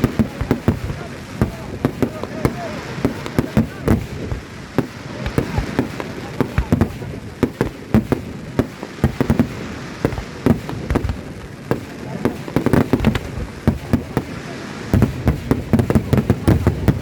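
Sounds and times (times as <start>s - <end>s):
fireworks bangs: 0.0s - 17.0s.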